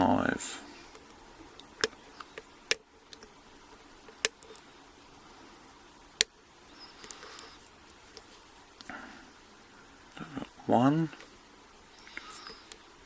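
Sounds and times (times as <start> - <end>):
faint ticks: 0.8 - 9.1, 11.1 - 12.9.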